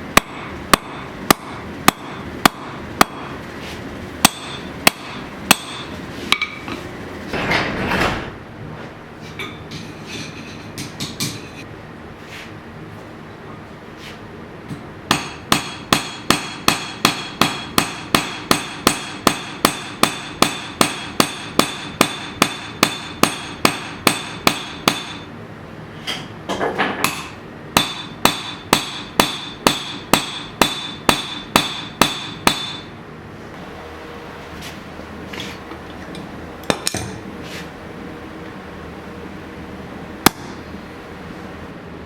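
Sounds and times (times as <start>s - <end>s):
hammer ringing on steel anvil: 4.2s - 6.5s, 15.1s - 25.3s, 27.1s - 32.9s.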